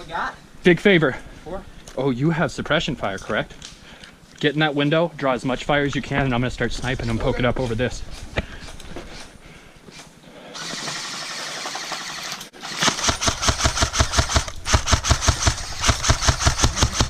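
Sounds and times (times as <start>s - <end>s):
airsoft gun rapid fire: 10.6s - 17.0s.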